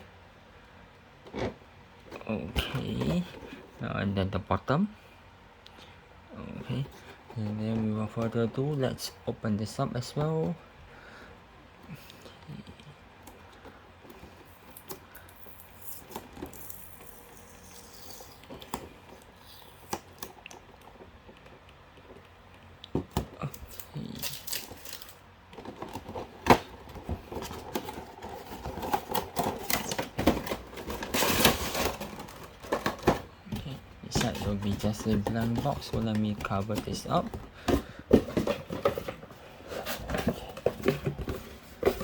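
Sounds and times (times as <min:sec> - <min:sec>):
packaging crinkling and rustling: 0:13.2 - 0:42.0
cardboard box being opened: 0:25.6 - 0:42.0.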